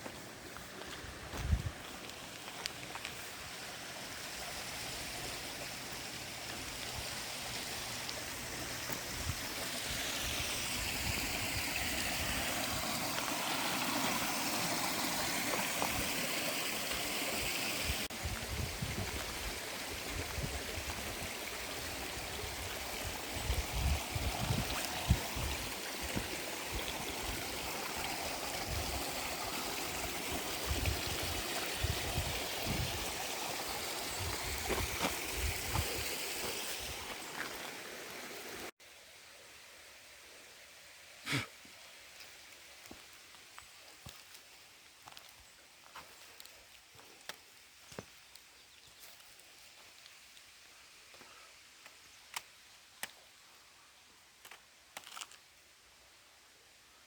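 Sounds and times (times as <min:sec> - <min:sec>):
stream flowing over rocks: 0:00.0 - 0:45.2.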